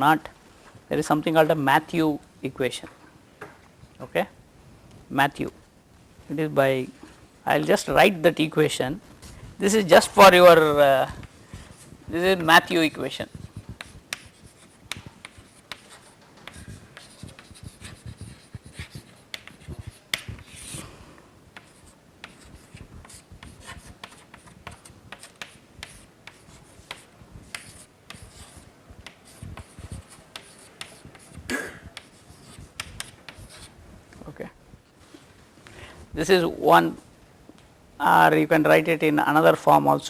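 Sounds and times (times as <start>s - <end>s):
scratchy pen strokes: 13.2s - 20.8s, 21.6s - 31.4s.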